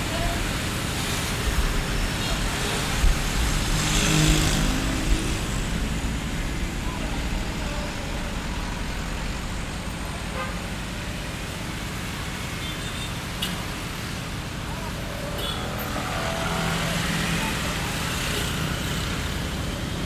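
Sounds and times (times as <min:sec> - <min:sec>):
crowd voices: 0:00.0 - 0:11.1
road traffic: 0:00.0 - 0:20.0.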